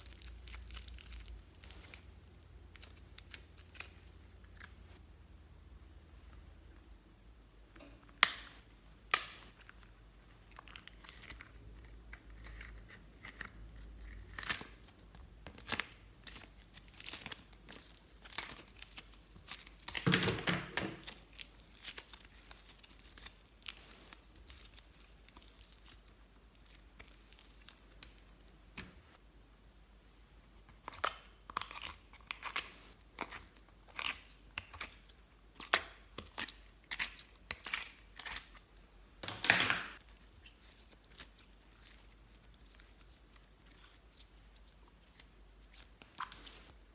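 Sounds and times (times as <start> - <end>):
slime kneaded by hand: 0.0 - 5.0
slime squelching: 0.0 - 5.0, 7.8 - 29.2, 30.7 - 46.9.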